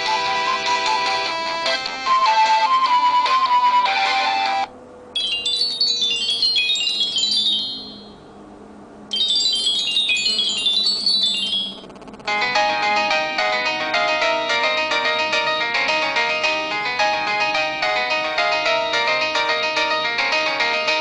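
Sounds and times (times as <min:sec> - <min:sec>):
ringtone melody: 0:00.0 - 0:08.2, 0:09.1 - 0:21.0
phone ringtone chimes: 0:05.2 - 0:08.2, 0:09.1 - 0:21.0.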